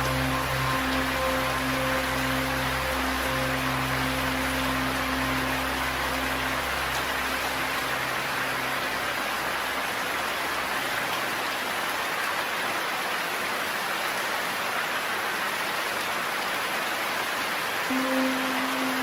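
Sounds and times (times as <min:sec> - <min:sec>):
low held music notes: 0:00.0 - 0:10.8, 0:17.9 - 0:19.0
steady rain hiss: 0:00.0 - 0:19.0.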